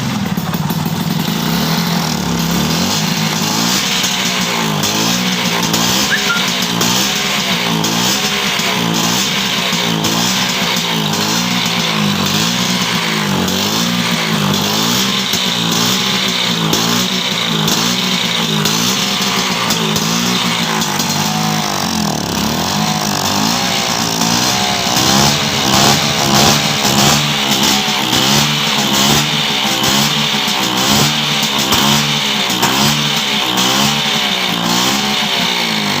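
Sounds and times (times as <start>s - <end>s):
scooter engine revving: 0.0s - 36.0s.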